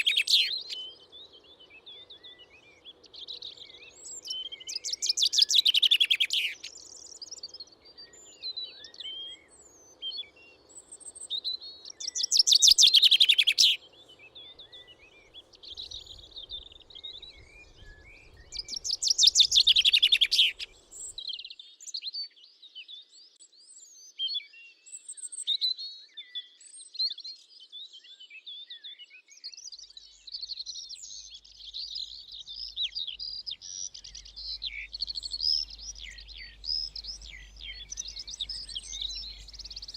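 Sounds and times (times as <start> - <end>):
loud rapid bird trill: 0.0 - 0.8, 17.0 - 21.2, 32.0 - 39.9
small birds chirping: 0.0 - 22.0, 27.8 - 39.9.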